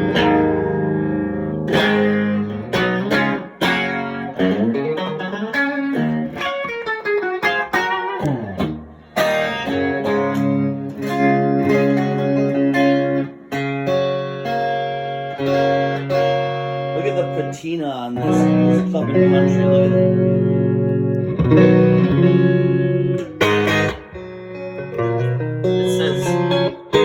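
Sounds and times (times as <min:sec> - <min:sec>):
electric guitar through tube amp: 0:00.0 - 0:27.0.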